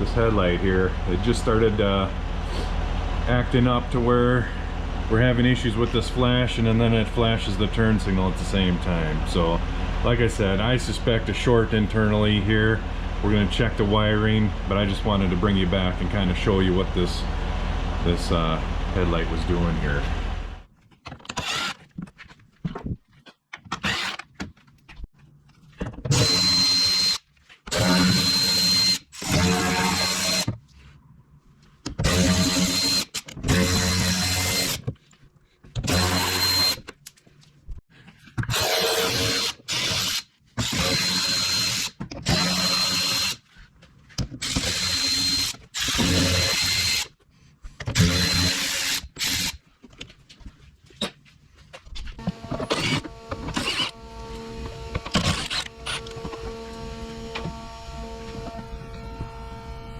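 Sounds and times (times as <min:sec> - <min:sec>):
cordless drill whining: 0:21.3 - 0:21.8, 0:23.8 - 0:24.2, 0:26.1 - 0:30.5, 0:32.0 - 0:34.8, 0:35.8 - 0:36.8, 0:38.5 - 0:43.4, 0:44.4 - 0:47.1, 0:48.0 - 0:49.6, 0:52.2 - 0:59.9.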